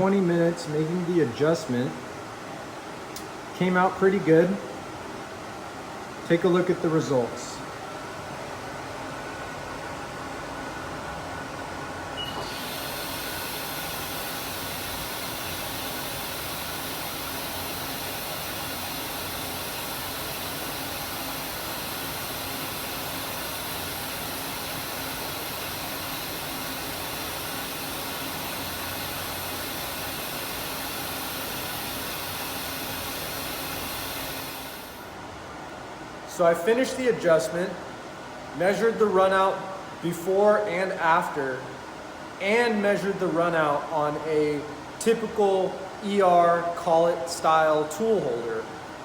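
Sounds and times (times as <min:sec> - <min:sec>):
machine hiss: 0:12.2 - 0:35.2.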